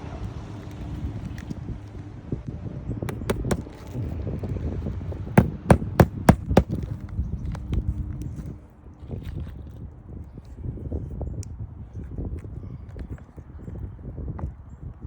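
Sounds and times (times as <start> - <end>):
hammer striking nails: 3.1 - 3.7, 5.4 - 6.9.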